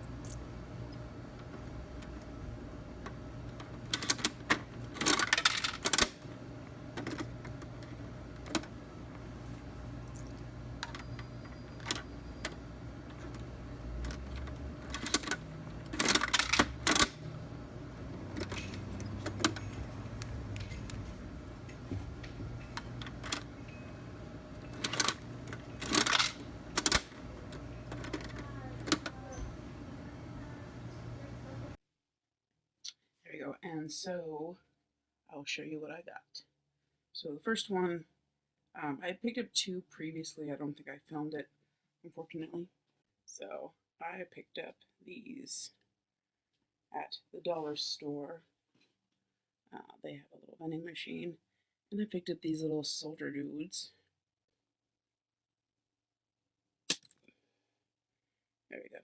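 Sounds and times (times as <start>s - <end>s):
vending machine clicking and rattling: 3.0s - 6.3s, 6.9s - 8.8s, 10.8s - 17.4s, 18.1s - 21.0s, 22.1s - 23.6s, 24.5s - 29.4s.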